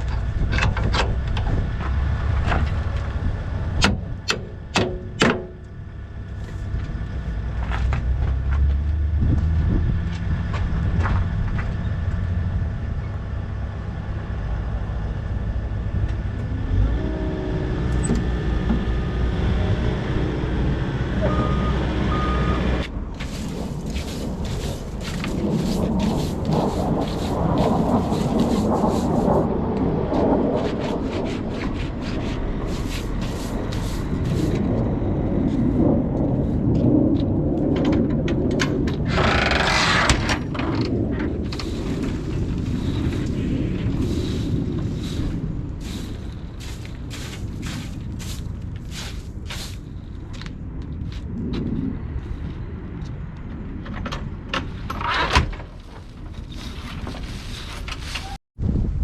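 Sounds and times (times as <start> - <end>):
excavator diesel engine running: 0.0 - 29.3, 31.0 - 36.8, 41.0 - 50.2.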